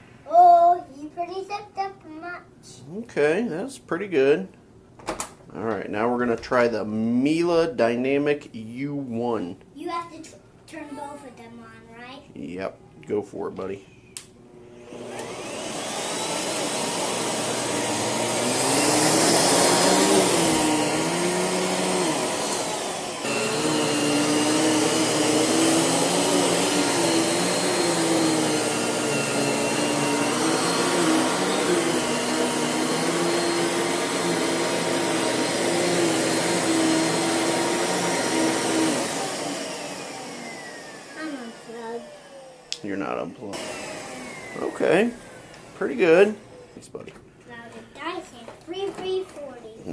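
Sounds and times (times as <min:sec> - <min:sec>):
upright vacuum cleaner running: 0:14.5 - 0:46.9.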